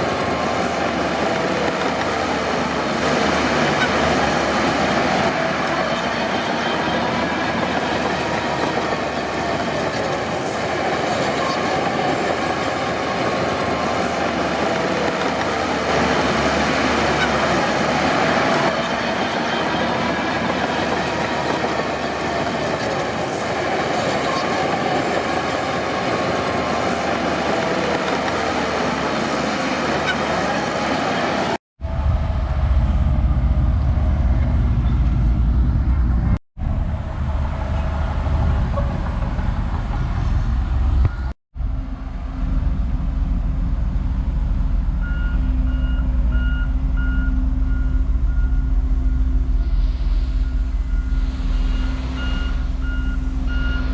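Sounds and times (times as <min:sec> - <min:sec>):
bulldozer steel tracks clattering: 0:00.0 - 0:31.6
deep diesel engine rumble: 0:31.8 - 0:53.9
reversing alarm beeping: 0:45.0 - 0:53.9.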